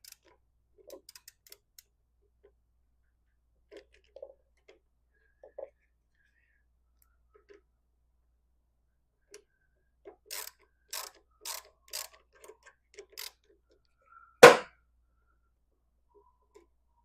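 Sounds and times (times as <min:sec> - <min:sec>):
loud sharp knock: 0:14.4 - 0:14.7.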